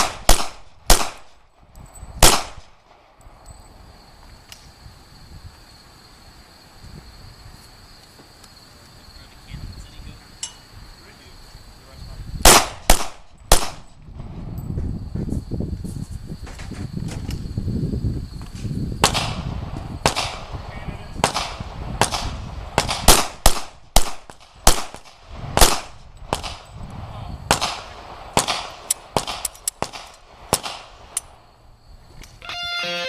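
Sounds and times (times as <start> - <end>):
pistol shots with echo: 0.0 - 1.4, 2.2 - 2.8, 12.5 - 13.9, 21.2 - 26.6.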